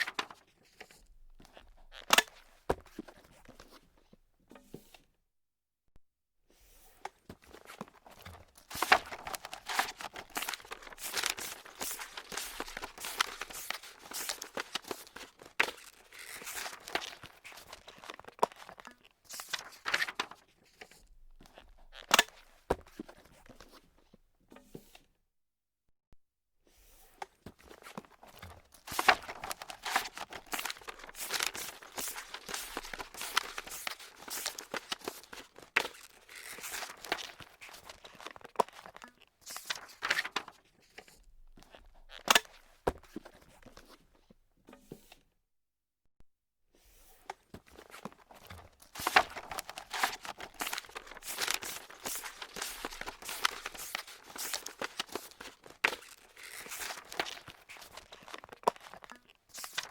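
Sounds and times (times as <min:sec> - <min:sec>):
paper being crumpled: 0:00.0 - 0:00.4, 0:07.6 - 0:18.7, 0:19.3 - 0:20.4, 0:27.7 - 0:40.5, 0:47.7 - 0:59.9.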